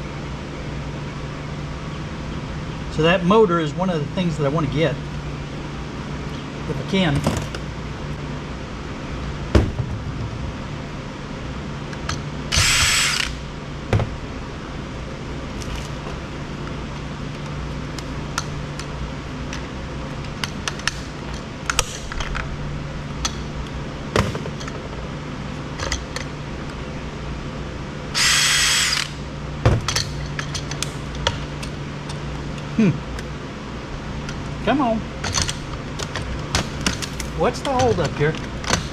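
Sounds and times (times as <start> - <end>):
power screwdriver whirring: 12.5 - 13.4, 28.2 - 29.2.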